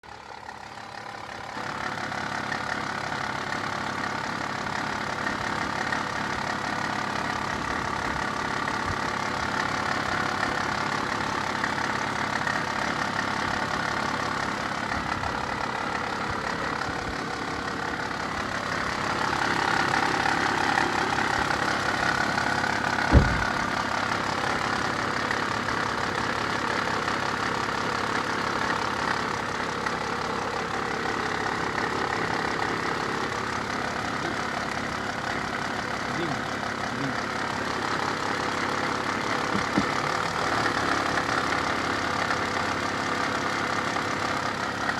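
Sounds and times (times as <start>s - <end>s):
car engine idling: 0.0s - 44.9s
short knock: 23.1s - 23.6s.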